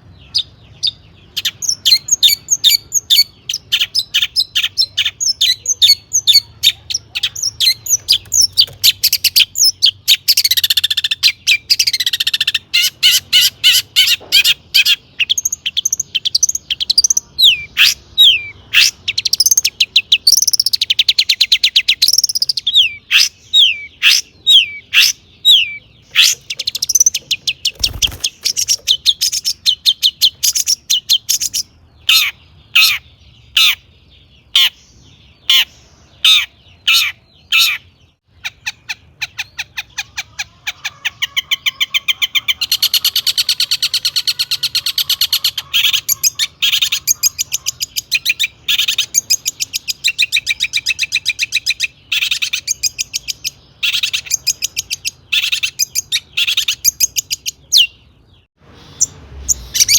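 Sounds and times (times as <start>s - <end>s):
bird singing chirps and whistles: 0.2s - 33.0s, 41.3s - 58.0s
buzzy rattling bird phrase: 26.0s - 33.0s.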